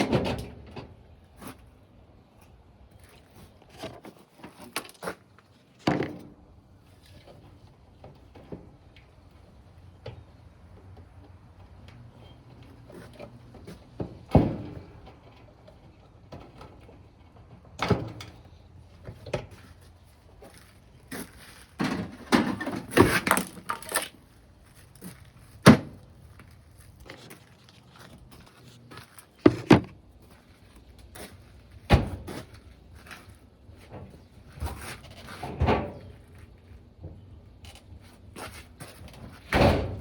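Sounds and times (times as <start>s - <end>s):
metal panels knocking and clattering: 29.4s - 30.0s.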